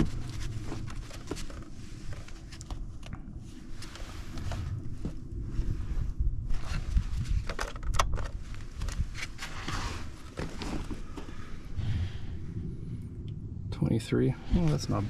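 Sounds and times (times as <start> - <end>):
clicks and knocks of handling things: 0.0 - 3.2, 7.1 - 11.3
steady low rumble: 0.0 - 15.0.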